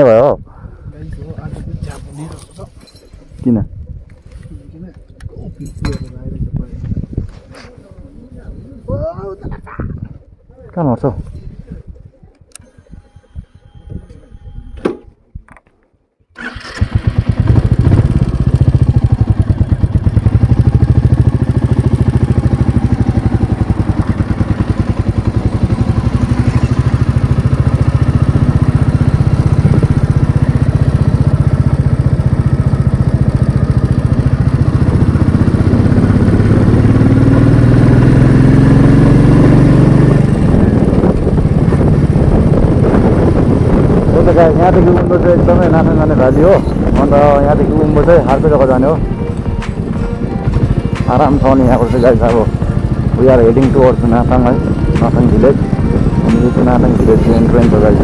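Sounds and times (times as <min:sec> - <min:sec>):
motorcycle engine running: 0:16.8 - 0:58.0.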